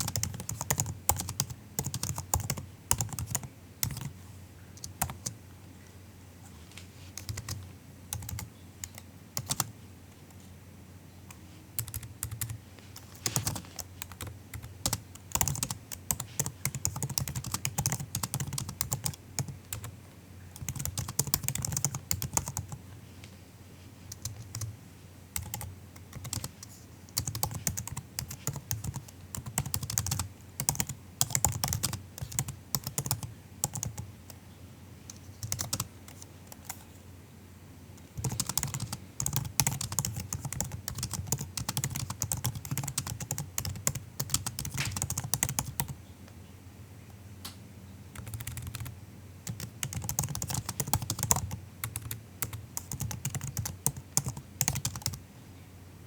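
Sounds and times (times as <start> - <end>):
typing on laptop keyboard: 0.0 - 4.1, 4.8 - 5.4, 7.2 - 9.7, 11.8 - 19.9, 20.6 - 22.8, 24.1 - 24.7, 25.4 - 34.1, 35.1 - 36.8, 38.1 - 46.0, 48.2 - 55.2.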